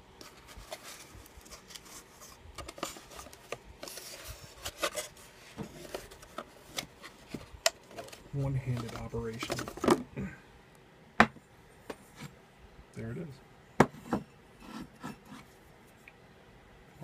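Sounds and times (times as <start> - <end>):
packaging rubbing and scraping: 0.2 - 9.9.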